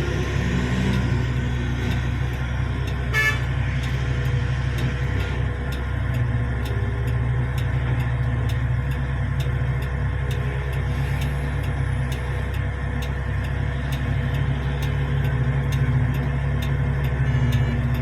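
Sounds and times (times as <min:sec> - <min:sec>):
diesel engines droning: 0:00.0 - 0:18.0
short horn toot: 0:03.1 - 0:03.5.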